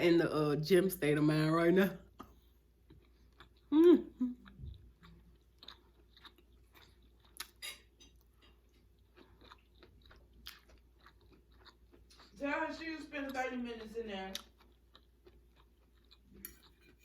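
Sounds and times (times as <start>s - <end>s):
person chewing: 2.1s - 12.4s, 13.8s - 17.0s.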